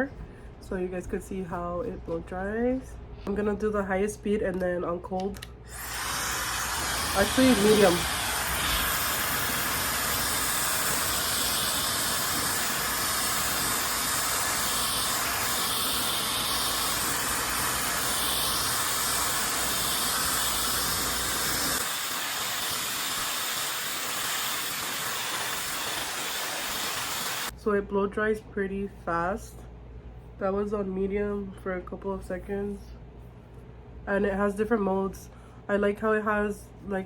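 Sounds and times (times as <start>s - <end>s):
hair dryer blowing air: 5.7s - 27.5s.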